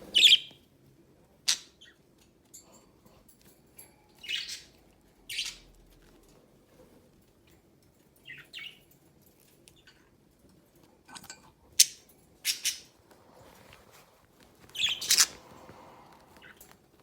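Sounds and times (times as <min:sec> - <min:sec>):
budgerigars chirping: 0:00.1 - 0:00.6, 0:04.2 - 0:04.7, 0:05.3 - 0:05.6, 0:12.5 - 0:12.9, 0:14.8 - 0:15.4.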